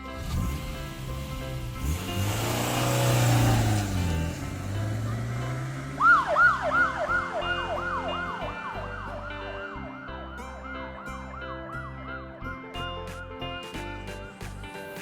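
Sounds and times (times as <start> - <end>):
police siren yelping: 5.5 - 13.3.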